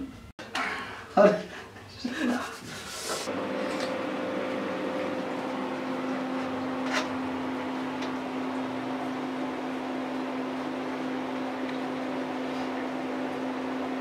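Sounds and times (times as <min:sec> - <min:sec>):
low machine hum: 0:03.3 - 0:14.0.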